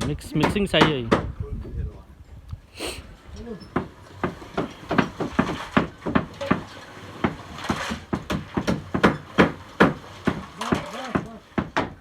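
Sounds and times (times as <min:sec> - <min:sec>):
sharp knocks of hand tools: 0:00.0 - 0:01.3.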